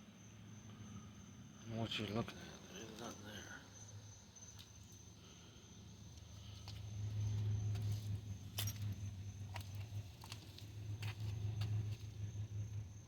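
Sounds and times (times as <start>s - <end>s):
insect trill: 0.0s - 13.0s
light clicks and jingles: 6.1s - 12.1s
low rumble: 6.4s - 13.0s.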